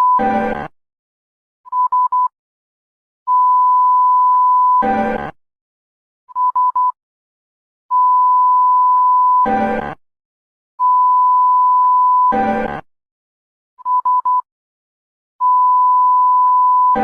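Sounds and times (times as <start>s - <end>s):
long steady alert beep: 15.4s - 17.0s
short alert beeps: 15.4s - 17.0s.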